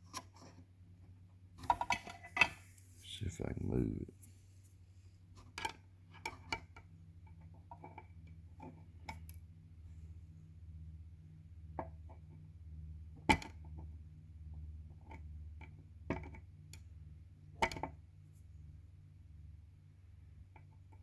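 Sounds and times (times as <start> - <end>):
steady low hum: 2.3 - 6.0.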